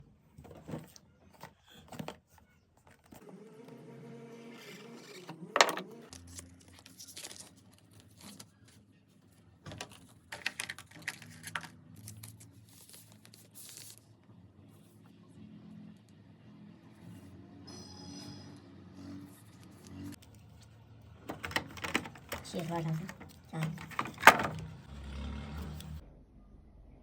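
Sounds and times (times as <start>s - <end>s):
packaging crinkling and tearing: 6.2s - 8.6s, 9.8s - 14.0s.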